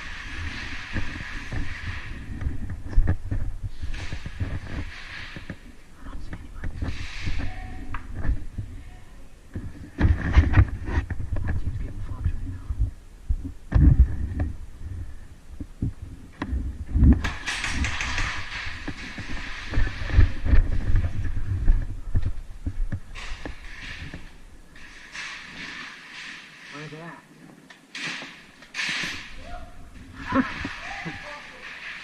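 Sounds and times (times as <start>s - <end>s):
body-worn camera thuds and rustling: 0.0s - 8.7s, 9.5s - 14.6s, 15.6s - 24.5s.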